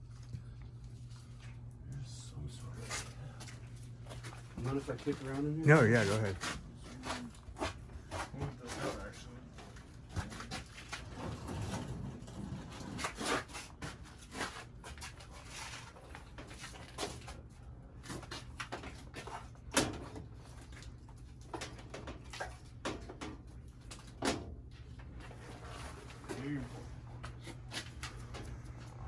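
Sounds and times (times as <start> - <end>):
steady low hum: 0.0 - 9.9.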